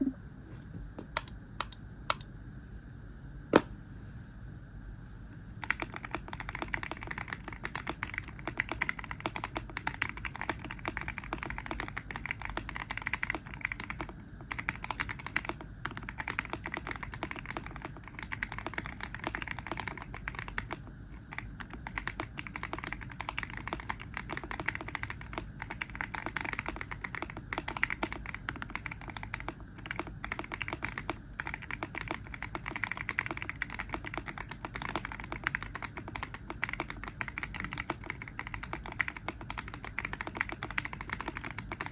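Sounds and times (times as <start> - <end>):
typing on mechanical keyboard: 5.6 - 41.9.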